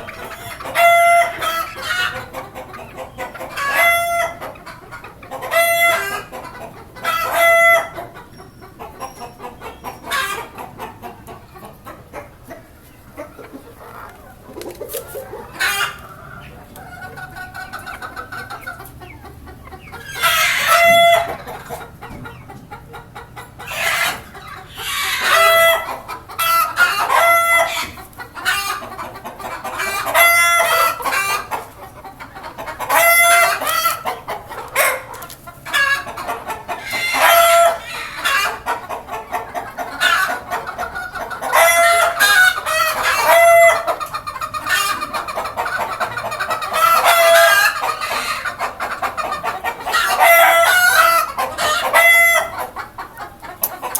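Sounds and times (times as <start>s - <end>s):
roosters crowing: 0.0s - 31.7s, 32.6s - 53.9s
hens clucking: 0.0s - 53.9s.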